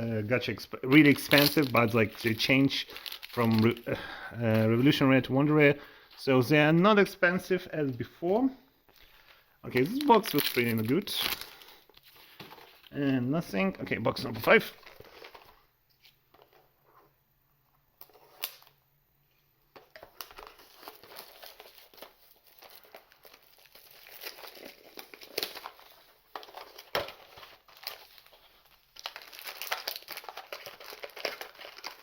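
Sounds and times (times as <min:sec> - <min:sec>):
card pack wrappers crinkling: 0:00.8 - 0:05.0, 0:07.8 - 0:16.5, 0:19.8 - 0:32.0
wrappers being torn open: 0:00.9 - 0:03.9, 0:09.7 - 0:12.0, 0:18.0 - 0:18.8, 0:20.0 - 0:32.0.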